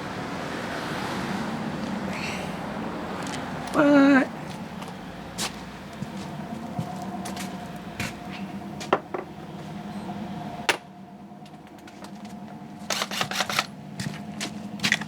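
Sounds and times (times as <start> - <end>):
steady low hum: 4.3 - 12.9.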